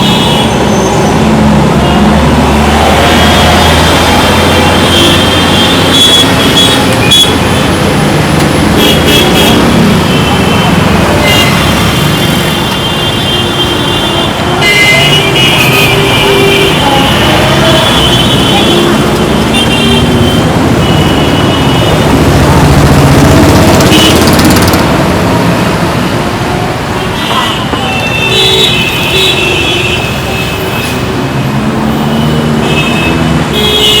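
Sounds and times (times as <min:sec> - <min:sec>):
vehicle horns: 0:00.0 - 0:07.8, 0:08.6 - 0:22.5, 0:23.6 - 0:24.8, 0:26.9 - 0:31.2, 0:32.0 - 0:34.0
traffic engines and tyres: 0:00.0 - 0:34.0.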